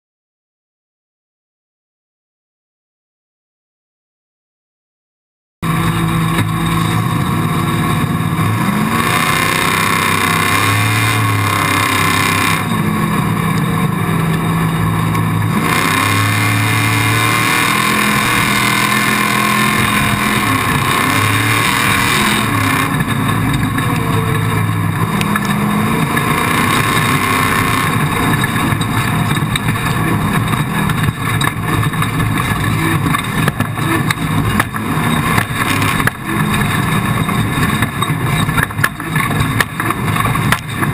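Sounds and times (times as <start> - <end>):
engine revving: 5.6 - 40.9
steady rushing noise: 5.6 - 40.9.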